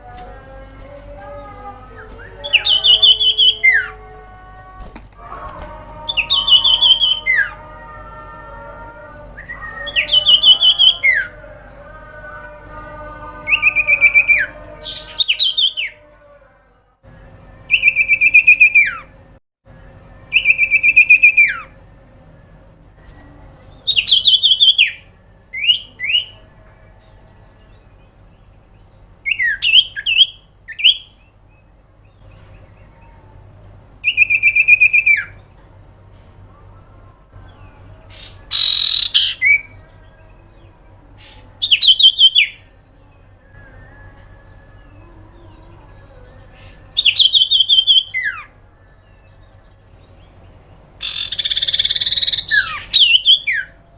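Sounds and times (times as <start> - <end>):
bird calling buzzy whistles: 38.5 - 39.7.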